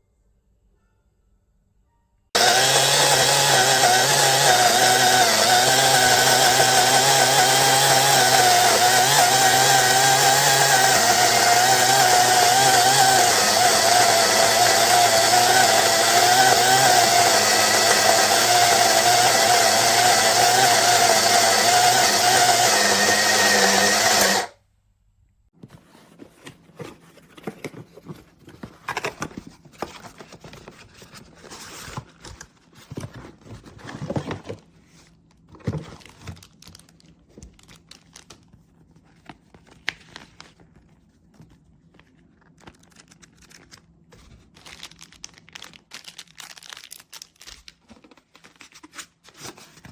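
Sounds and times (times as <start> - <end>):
coffee grinder motor whining: 2.4 - 24.6.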